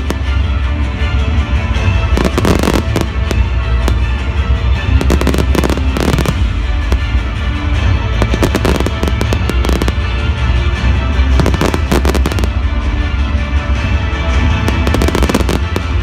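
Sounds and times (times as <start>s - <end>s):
fireworks bangs and crackling: 0.0s - 0.5s, 1.7s - 12.9s, 14.3s - 16.0s
loud music with heavy bass: 2.1s - 10.6s, 11.2s - 12.6s, 14.2s - 16.0s.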